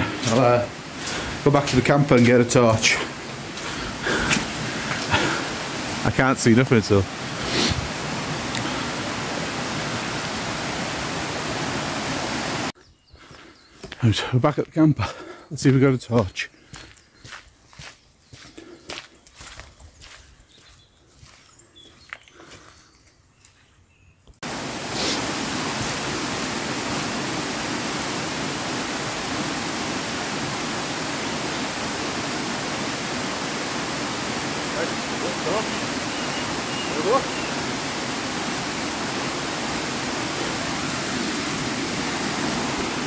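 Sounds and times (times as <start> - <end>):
flowing water: 0.0 - 12.8, 24.4 - 43.0.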